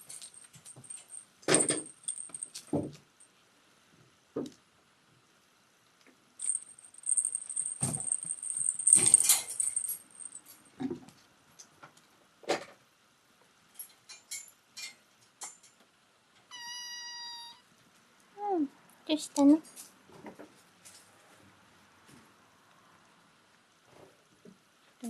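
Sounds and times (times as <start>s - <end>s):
jingle bell jingling: 0.0s - 2.8s, 6.4s - 10.7s.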